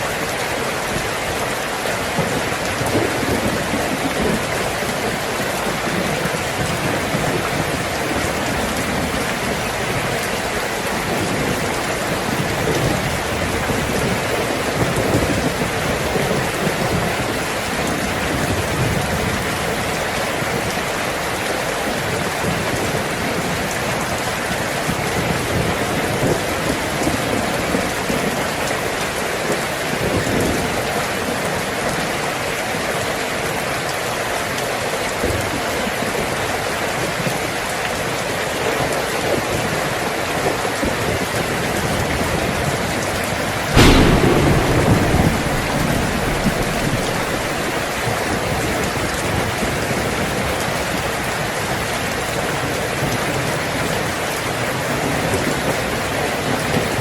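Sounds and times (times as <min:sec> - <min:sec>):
heavy rain on a tin roof: 0:00.0 - 0:57.0
low rumble of thunder: 0:02.1 - 0:28.7, 0:40.8 - 0:51.1.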